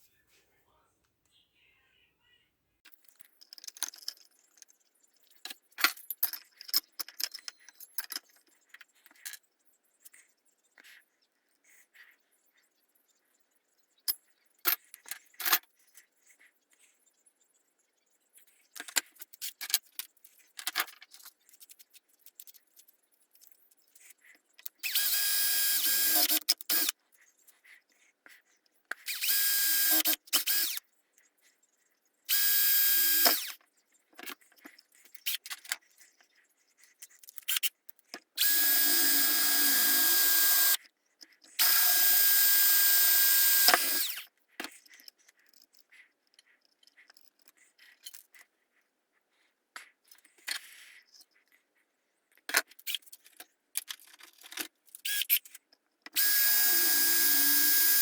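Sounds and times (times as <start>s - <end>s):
small parts clicking and rattling: 2.8s - 11.0s, 14.0s - 16.9s, 18.3s - 31.3s, 32.3s - 48.6s, 49.4s - 51.6s, 52.3s - 58.0s
power drill running: 24.9s - 26.9s, 29.1s - 30.8s, 32.3s - 33.6s, 38.4s - 40.8s, 41.6s - 44.2s, 56.2s - 58.0s.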